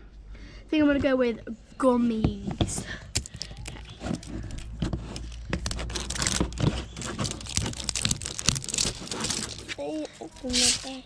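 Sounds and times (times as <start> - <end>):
plastic packaging crinkling and tearing: 3.1 - 11.0.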